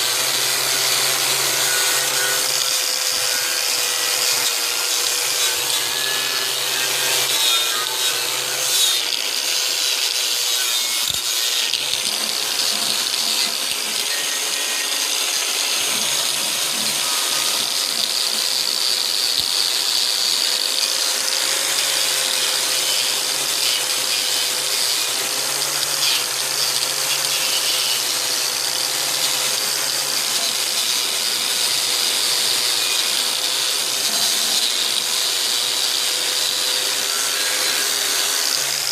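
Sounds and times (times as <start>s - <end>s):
angle grinder wire brush on metal: 0.0s - 38.9s.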